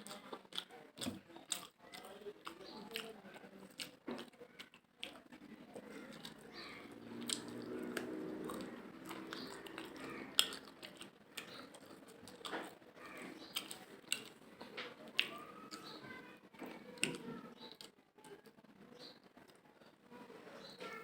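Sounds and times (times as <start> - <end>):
faint voice: 0.0 - 7.0, 7.8 - 21.0
person chewing with mouth smacks: 0.0 - 15.9.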